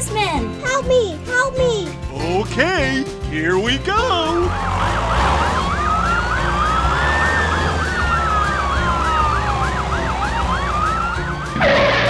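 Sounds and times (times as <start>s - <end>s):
police siren: 4.3s - 12.0s.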